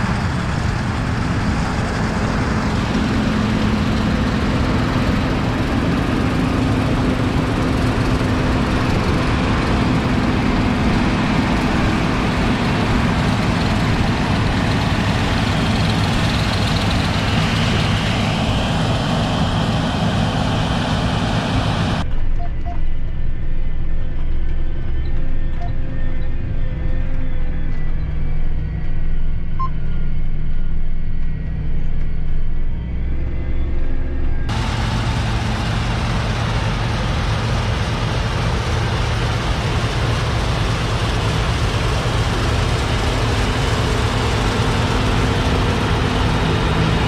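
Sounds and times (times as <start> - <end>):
combine harvester running: 0.0 - 22.5, 32.9 - 47.0.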